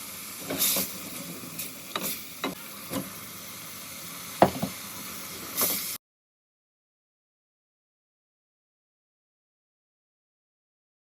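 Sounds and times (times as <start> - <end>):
food frying in a pot: 0.0 - 6.0
spoon knocking against pot: 4.4 - 4.8.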